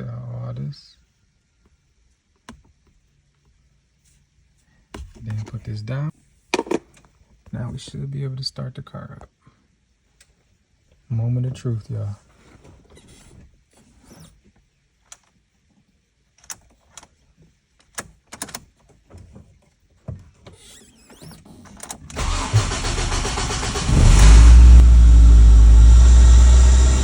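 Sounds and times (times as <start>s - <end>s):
car engine cranking and idling: 22.1s - 27.0s.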